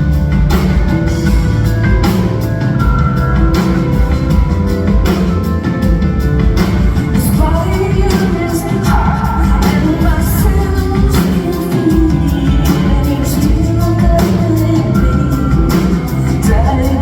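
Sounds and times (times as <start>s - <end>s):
drums hitting: 0.0s - 17.0s
live rock band: 0.0s - 17.0s
woman singing: 7.1s - 17.0s.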